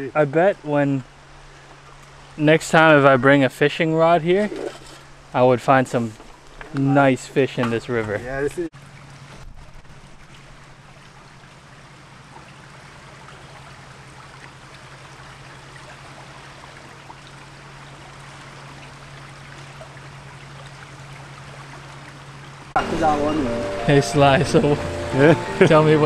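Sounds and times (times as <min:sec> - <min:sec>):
river water rushing: 0:08.8 - 0:26.0
low hum: 0:22.6 - 0:26.0.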